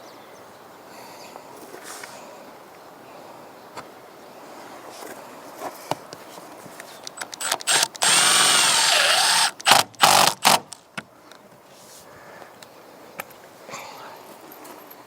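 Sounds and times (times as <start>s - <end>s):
power drill bursts: 7.4s - 10.6s.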